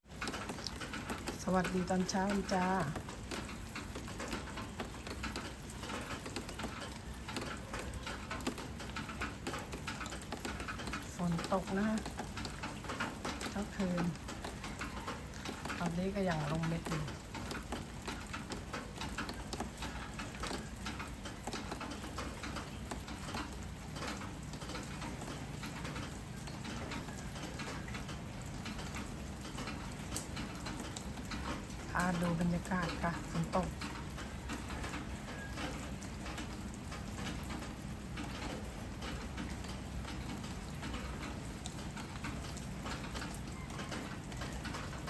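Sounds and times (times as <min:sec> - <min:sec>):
light rain pattering: 0:00.0 - 0:45.0.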